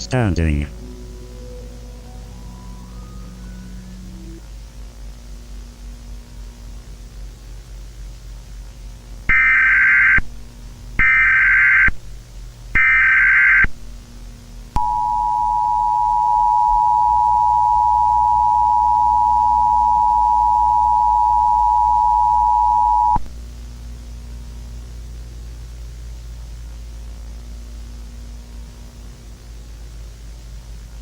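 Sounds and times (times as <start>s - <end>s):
steady test tone: 0.0s - 4.5s, 14.8s - 23.3s
electrical hum and hiss: 0.0s - 31.0s
harsh electronic beeps: 9.3s - 10.2s, 11.0s - 11.9s, 12.8s - 13.7s, 14.8s - 23.2s.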